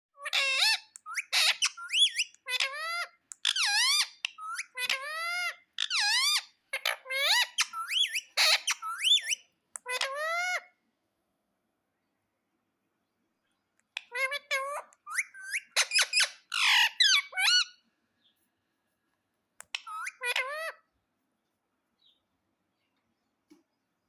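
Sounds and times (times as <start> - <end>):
parrot squawking: 0.2 - 10.8, 14.0 - 17.8, 19.7 - 20.9.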